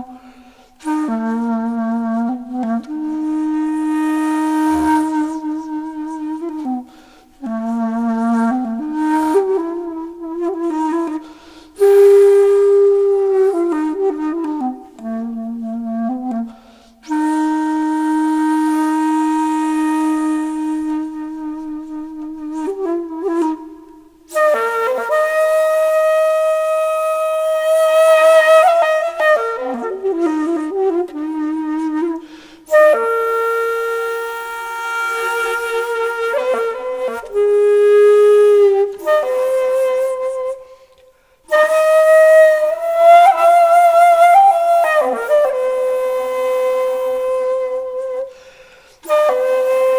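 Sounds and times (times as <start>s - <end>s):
solo wind instrument music: 0.0s - 49.9s.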